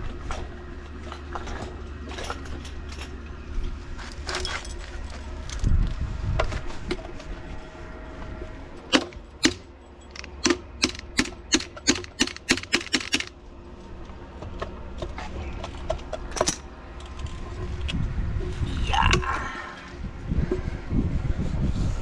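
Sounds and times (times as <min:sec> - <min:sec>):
low steady rumble: 0:00.0 - 0:22.0
sharp clicks: 0:09.4 - 0:13.3.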